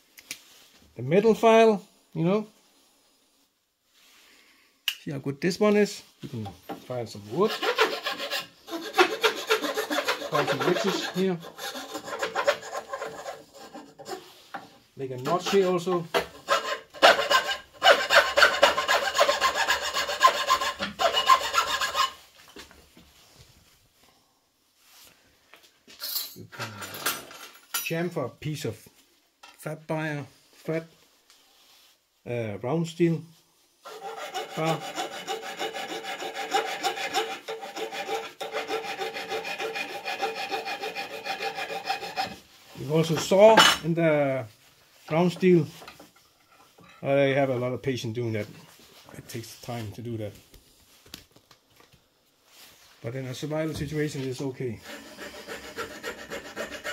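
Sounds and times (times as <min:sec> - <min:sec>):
metal file rasping wood: 0:07.2 - 0:22.2, 0:33.8 - 0:42.5, 0:54.8 - 0:56.9.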